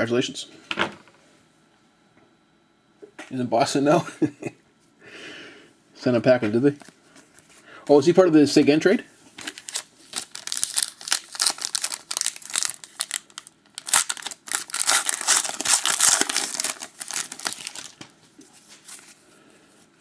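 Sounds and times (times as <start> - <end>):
wrapper tearing and crinkling: 9.4 - 18.1.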